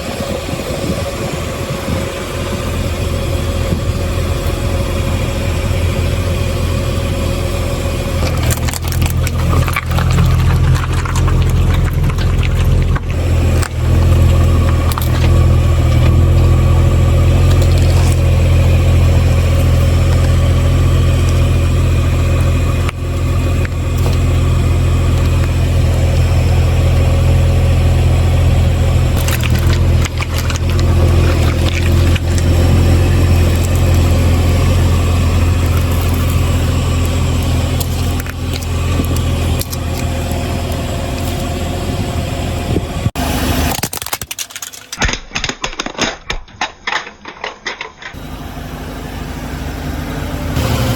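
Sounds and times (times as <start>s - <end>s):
car engine running: 0.0s - 44.9s, 46.8s - 50.9s
sharp cracks: 43.6s - 48.2s.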